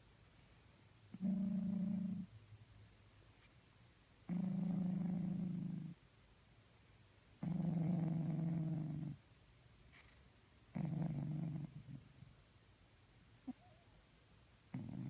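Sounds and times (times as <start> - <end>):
cat snoring: 1.1 - 2.3, 4.3 - 6.0, 7.4 - 9.2, 10.7 - 12.0, 14.7 - 15.0.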